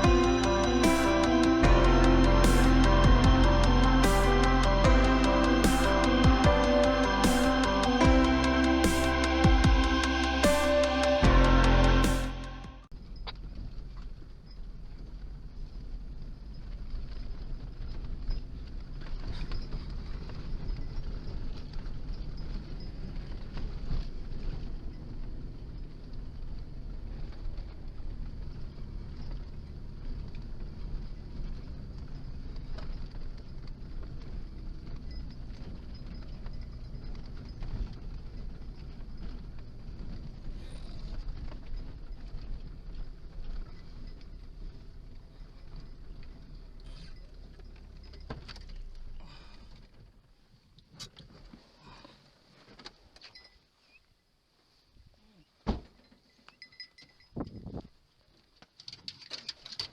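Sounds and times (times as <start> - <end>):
faint clicks and rustles: 13.0 - 55.2, 55.9 - 59.9
wind rumble on microphone: 57.3 - 58.0.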